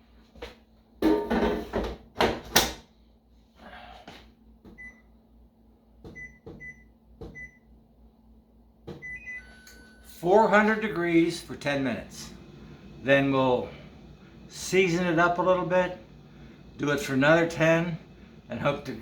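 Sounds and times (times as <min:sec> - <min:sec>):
control panel beeps: 0:06.1 - 0:07.6, 0:09.0 - 0:10.1.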